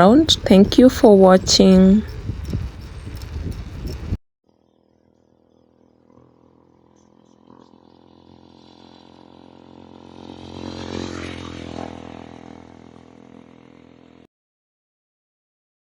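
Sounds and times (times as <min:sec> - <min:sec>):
vehicle engine driving past: 0:05.6 - 0:14.2.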